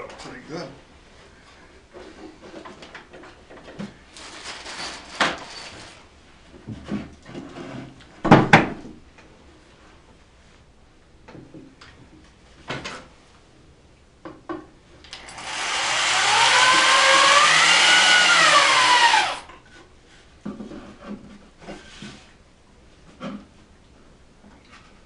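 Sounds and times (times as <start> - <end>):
electric drill running: 15.1 - 19.5
wood and tools clattering: 15.2 - 19.6.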